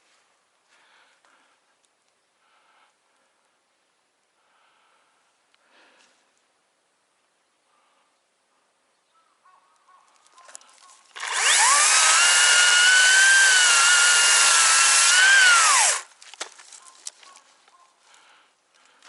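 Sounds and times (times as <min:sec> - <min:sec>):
chainsaw cutting wood: 0:11.1 - 0:16.1.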